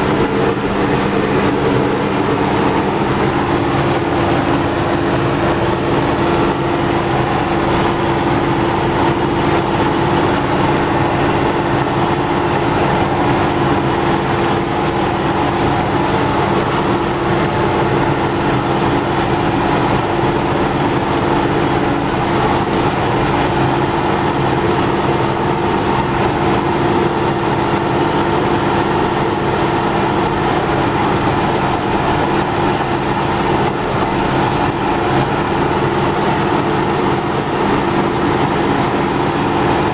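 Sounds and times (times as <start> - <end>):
tractor diesel engine running: 0.0 - 39.9.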